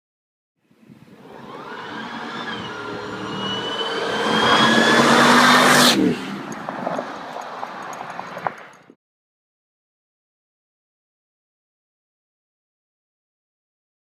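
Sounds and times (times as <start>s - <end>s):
supercharger whine: 0.9s - 8.9s
engine accelerating hard: 1.0s - 8.9s.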